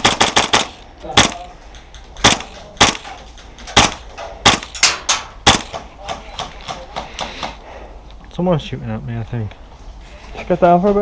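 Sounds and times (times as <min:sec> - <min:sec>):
airsoft gun shots: 0:00.0 - 0:01.5, 0:02.2 - 0:05.9.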